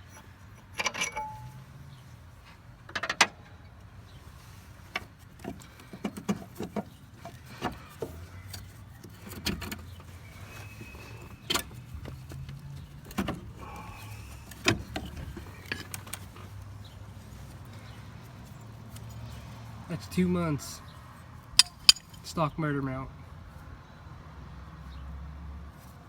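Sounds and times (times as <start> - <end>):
metallic clinks of tools: 0.8 - 1.6, 21.6 - 22.4.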